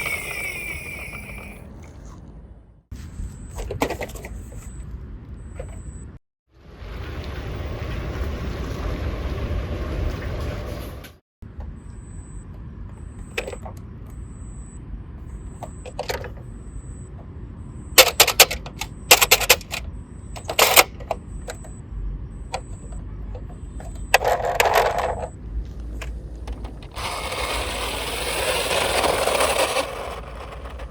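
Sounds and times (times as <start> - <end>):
toy cars clattering: 0.0 - 1.6, 18.0 - 19.8, 20.4 - 21.2, 23.4 - 25.3, 26.0 - 30.9
toy cars rolling: 0.0 - 1.6, 18.0 - 19.8, 20.4 - 21.2, 23.4 - 30.9
sharp clicks: 18.0 - 21.8.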